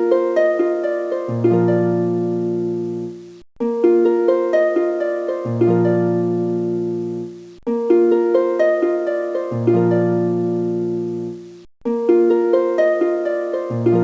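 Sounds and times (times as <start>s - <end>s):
plucked harp-like melody: 0.0s - 14.0s.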